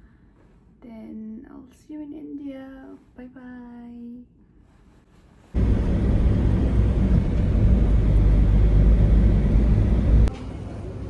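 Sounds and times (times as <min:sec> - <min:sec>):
low rumble of moving vehicle: 0:05.6 - 0:11.0.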